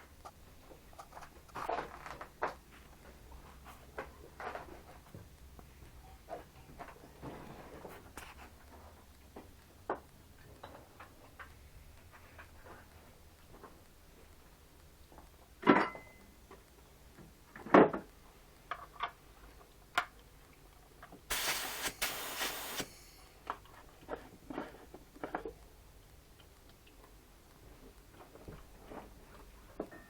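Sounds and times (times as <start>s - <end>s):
spray gun air hiss: 21.3s - 23.4s.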